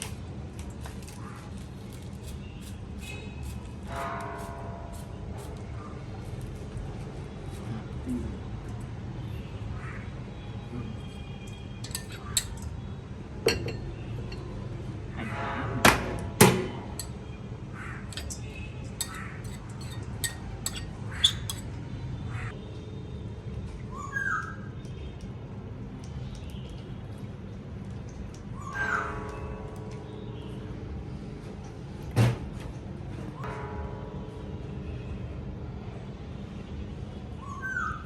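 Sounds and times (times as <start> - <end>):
bowls and utensils clinking: 11.8 - 12.8, 13.4 - 14.6, 15.9 - 17.2, 18.0 - 21.8.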